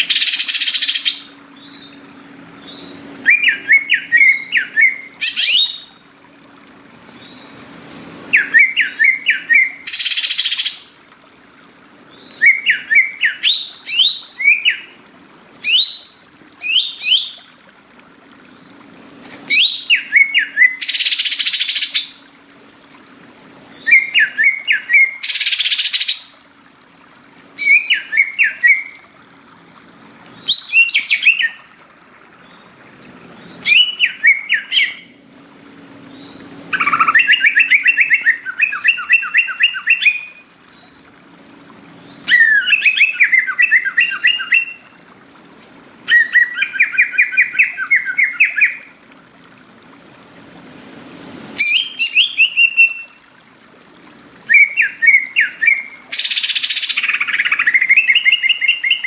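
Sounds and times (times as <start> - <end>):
bird whistled chirps: 2.6 - 5.9, 8.3 - 10.8, 12.2 - 15.0, 15.6 - 17.4, 19.5 - 22.2, 23.8 - 26.3, 27.6 - 29.0, 30.4 - 31.6, 33.6 - 35.0, 36.2 - 40.4, 42.3 - 44.8, 46.1 - 48.9, 51.6 - 53.2, 54.5 - 59.0.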